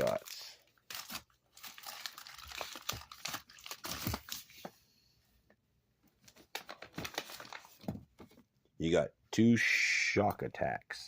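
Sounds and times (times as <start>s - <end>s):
wrappers crinkling: 0.0s - 4.4s, 6.3s - 7.8s.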